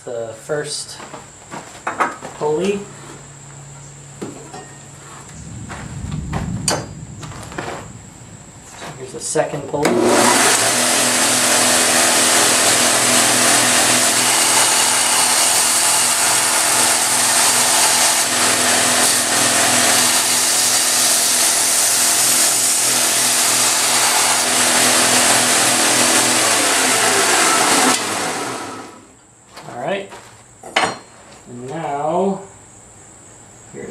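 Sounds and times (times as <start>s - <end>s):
grinder motor hum: 9.8s - 29.1s.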